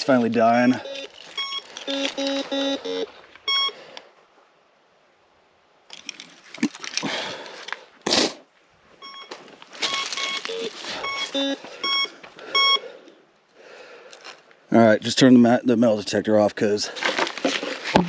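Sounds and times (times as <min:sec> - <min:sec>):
metal detector beeping: 0:00.0 - 0:03.8, 0:09.0 - 0:12.8
rustling handling noise: 0:00.0 - 0:03.9, 0:08.8 - 0:12.4, 0:16.9 - 0:18.0.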